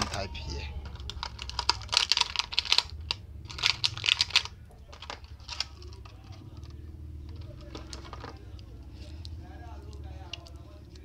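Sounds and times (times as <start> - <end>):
small plastic items rattling: 0.0 - 6.6, 7.3 - 8.7.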